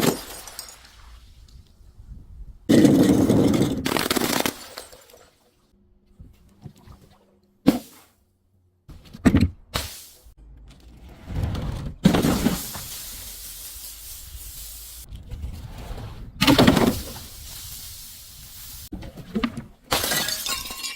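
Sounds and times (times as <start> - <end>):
objects smashed with cracks: 0.0 - 1.0
hissing spray: 12.4 - 15.1, 17.0 - 18.9.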